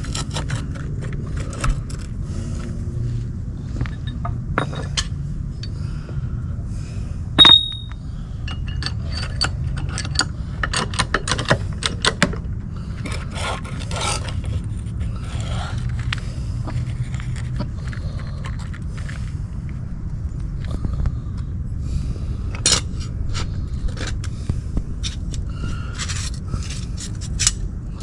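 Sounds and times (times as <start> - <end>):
steady low rumble: 0.0 - 28.0
hand tools knocking and scraping: 3.8 - 5.1, 7.4 - 12.4
loud sharp metal clank: 7.4 - 8.0.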